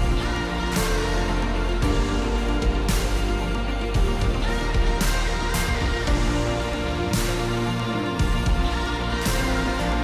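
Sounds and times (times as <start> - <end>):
song with steady beat: 0.0 - 10.0.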